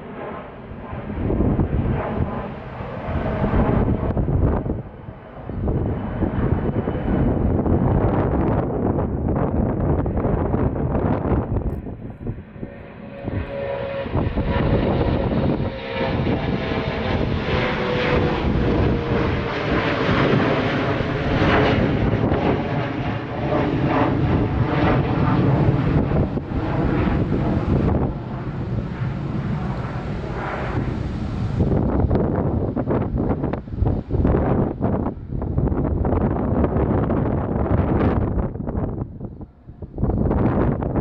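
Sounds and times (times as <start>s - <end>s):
jet engines roaring: 0.0s - 41.0s
jet whine falling in pitch: 11.4s - 32.8s.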